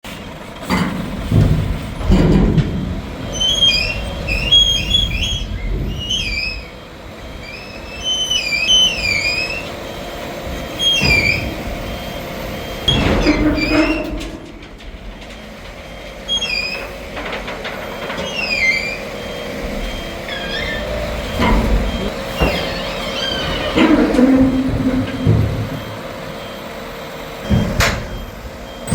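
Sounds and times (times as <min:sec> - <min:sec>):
heavy machine rumble: 0:00.0 - 0:28.9
loud metal clunks: 0:00.6 - 0:06.7, 0:10.5 - 0:19.0, 0:19.6 - 0:26.4, 0:27.4 - 0:28.9
short high falling squeals: 0:03.3 - 0:06.8, 0:07.4 - 0:09.7, 0:18.2 - 0:26.0.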